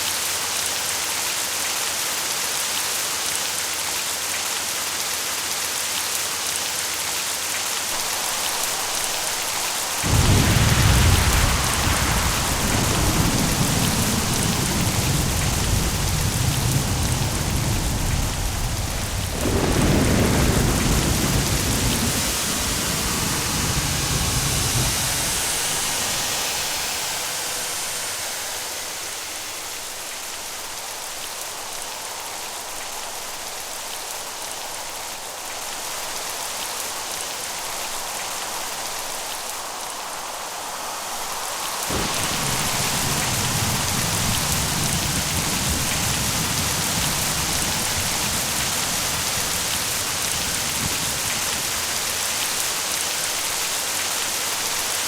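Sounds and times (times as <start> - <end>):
heavy rain: 0.0 - 55.0
rolling thunder: 8.0 - 29.3, 41.9 - 53.6.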